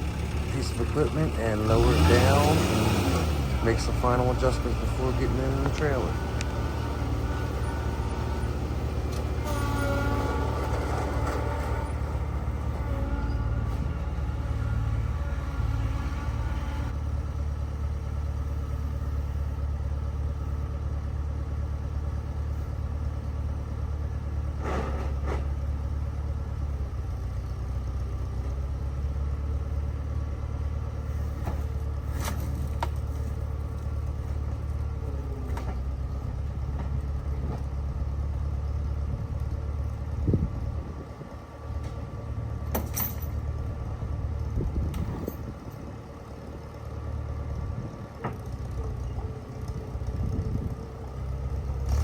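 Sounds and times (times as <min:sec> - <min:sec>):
heavy equipment engine running: 0:00.0 - 0:52.0
metal clanks: 0:42.7 - 0:43.4.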